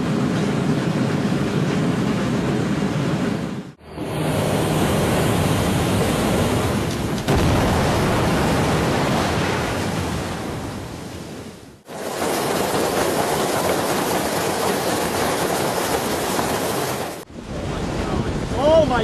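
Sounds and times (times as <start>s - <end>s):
windstorm roar: 0.0s - 19.0s.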